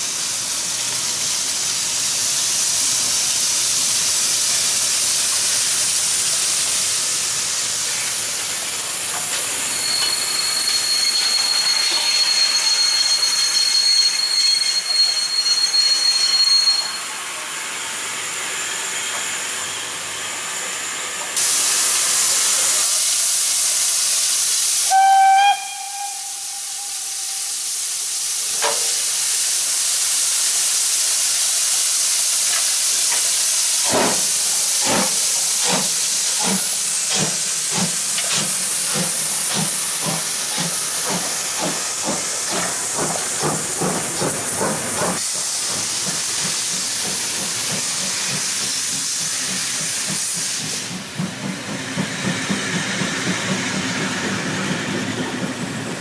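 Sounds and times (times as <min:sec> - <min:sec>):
steam locomotive hissing: 0:00.0 - 0:56.0
train whistle blast: 0:24.8 - 0:27.8.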